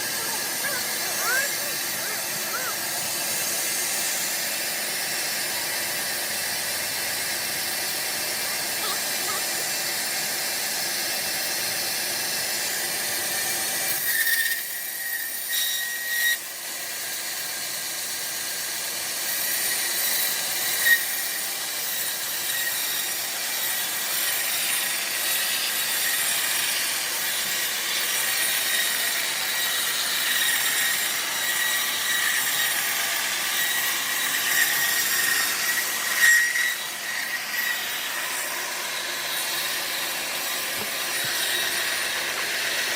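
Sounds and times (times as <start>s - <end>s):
band saw cutting log: 0.0s - 42.9s.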